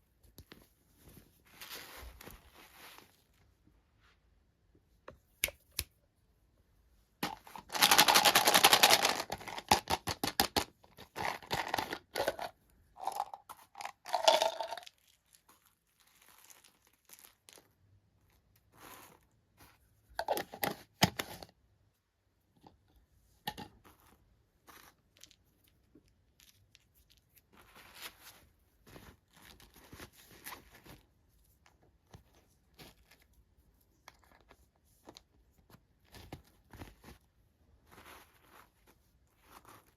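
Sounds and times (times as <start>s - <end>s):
handling scrapes: 0.9s - 4.2s.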